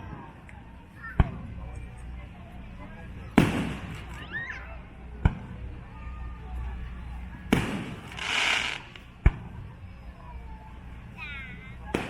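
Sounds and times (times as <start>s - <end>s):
fireworks bangs: 7.5s - 9.0s
short hiss: 8.1s - 9.0s.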